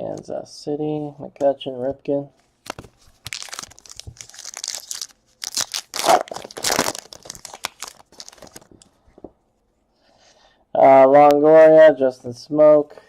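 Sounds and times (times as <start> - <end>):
plastic wrapper crinkling and tearing: 2.6 - 9.0.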